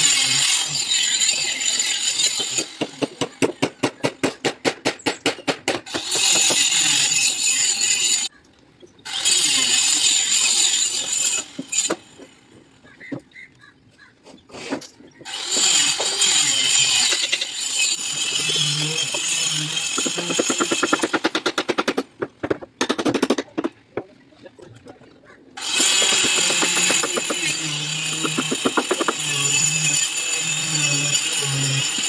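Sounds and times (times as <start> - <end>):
rapid even hammering: 18.2 - 23.8, 25.6 - 32.0
power tool running loudly: 25.6 - 32.0.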